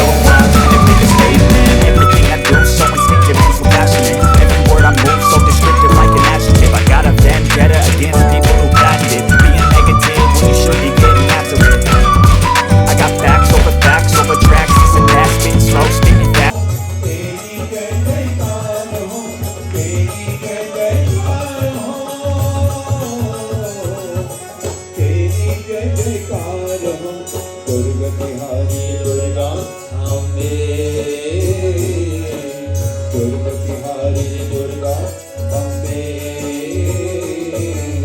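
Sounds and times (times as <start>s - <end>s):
low drum beat: 0.0s - 16.5s
person singing: 0.0s - 38.0s.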